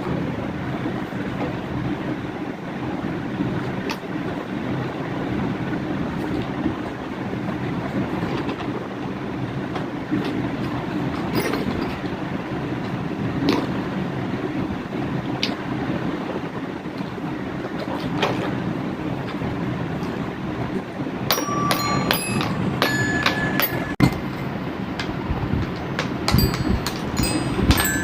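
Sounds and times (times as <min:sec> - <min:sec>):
steady low rumble: 0:18.7 - 0:28.0
xylophone notes: 0:21.3 - 0:24.1, 0:26.3 - 0:28.0.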